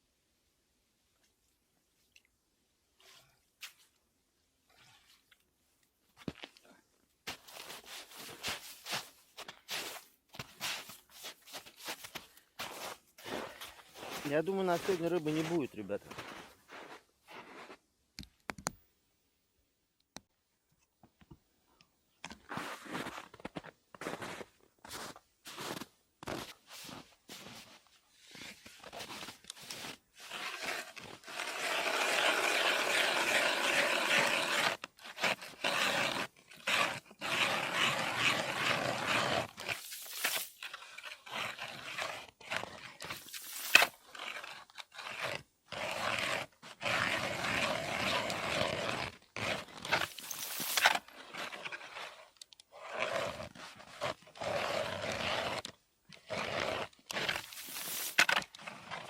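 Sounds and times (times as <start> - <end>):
ice auger crunching through ice: 7.3 - 17.6, 22.5 - 59.0.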